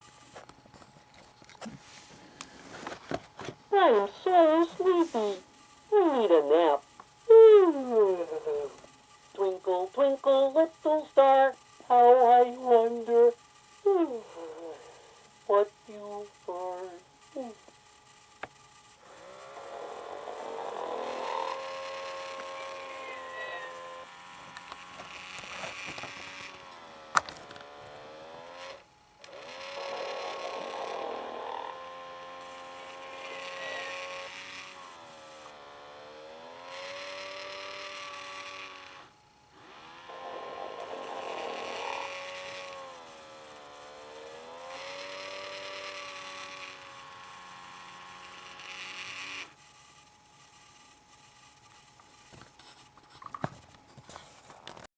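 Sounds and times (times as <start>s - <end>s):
toy playing recorded snoring: 3.7s - 17.7s, 19.0s - 49.6s.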